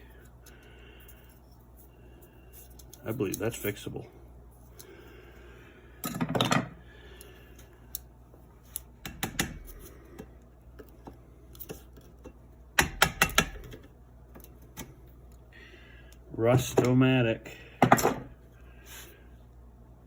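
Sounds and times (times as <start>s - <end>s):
small parts clicking and tapping: 2.5s - 3.8s.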